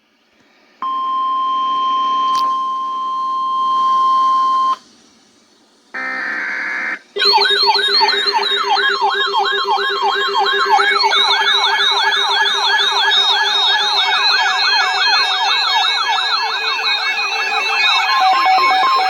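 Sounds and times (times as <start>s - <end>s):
wailing electronic siren tone: 6.0s - 19.0s.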